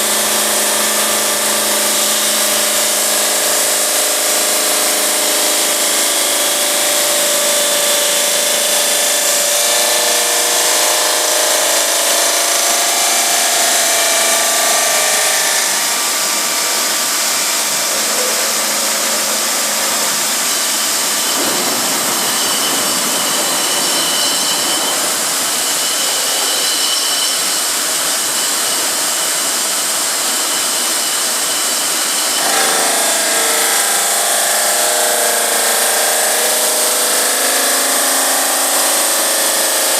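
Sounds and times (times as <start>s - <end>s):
pitched whine: 0.0s - 29.0s
saw cutting stone: 0.0s - 39.9s.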